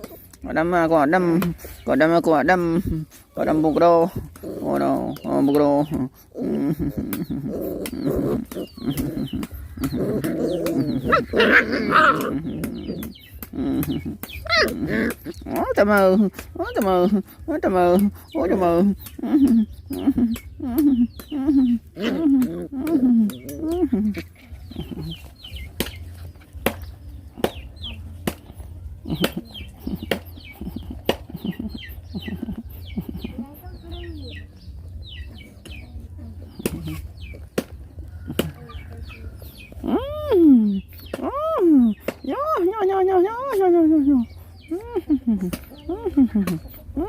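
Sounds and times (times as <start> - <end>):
chicks peeping: 0.0 - 47.0
puppies whimpering and squeaking: 0.0 - 47.0
puppy high cry: 14.4 - 15.3.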